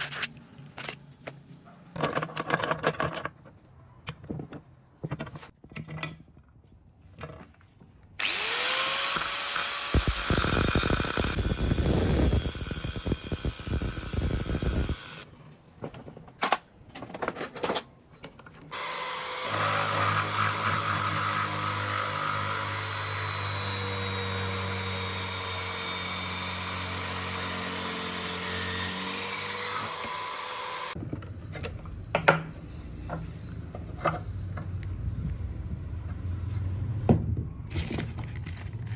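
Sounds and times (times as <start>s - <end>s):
power tool whining: 8.2s - 15.2s, 18.7s - 31.0s.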